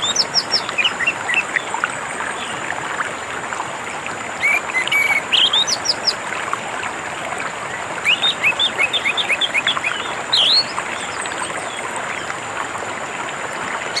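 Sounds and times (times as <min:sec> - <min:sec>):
bird singing: 0:00.0 - 0:01.5, 0:04.4 - 0:06.2, 0:08.0 - 0:11.2
running water: 0:00.0 - 0:14.0.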